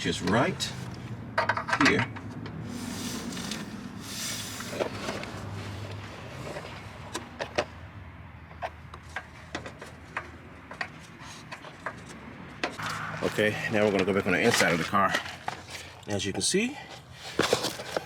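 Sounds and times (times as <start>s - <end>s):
wiring harness rustling and scraping: 12.8s - 18.0s.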